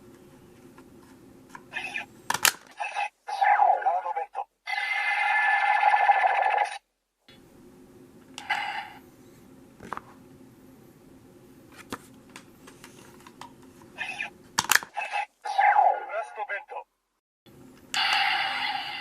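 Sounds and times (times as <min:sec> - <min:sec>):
low steady hum: 0:06.9 - 0:19.0.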